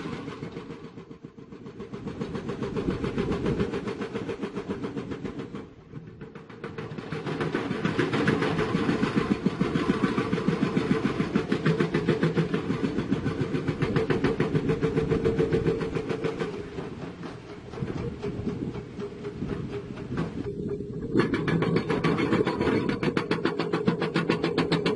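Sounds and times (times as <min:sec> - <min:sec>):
hydraulic breaker hammering rock: 0:01.7 - 0:24.9.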